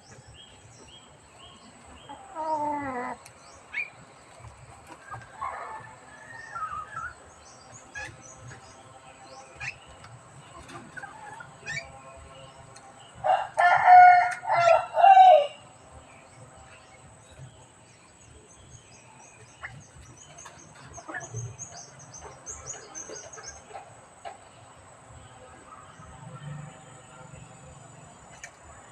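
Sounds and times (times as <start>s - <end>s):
rooster crowing: 5.3s - 7.2s, 13.2s - 15.6s
bird chirps and twitters: 6.6s - 13.2s, 16.2s - 23.8s.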